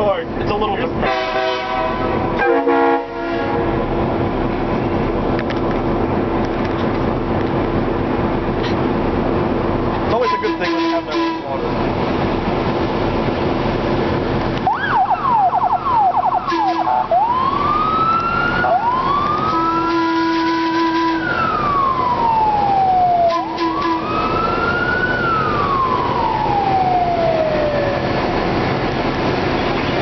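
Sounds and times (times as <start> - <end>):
emergency siren yelp and wail: 14.6 - 29.5.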